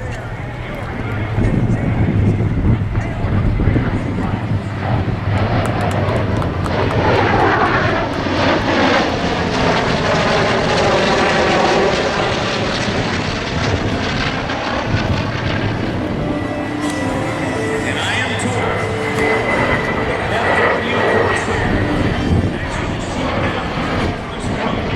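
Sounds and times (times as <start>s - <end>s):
propeller airplane engines droning: 0.0s - 24.9s.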